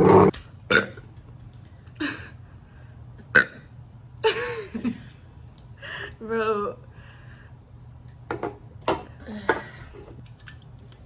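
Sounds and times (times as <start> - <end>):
woman burping: 0.0 - 1.0.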